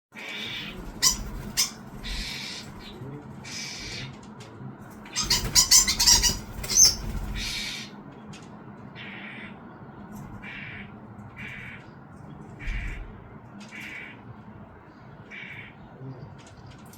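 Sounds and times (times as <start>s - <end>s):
fledgling bird begging calls: 0.2s - 4.1s, 5.1s - 7.9s.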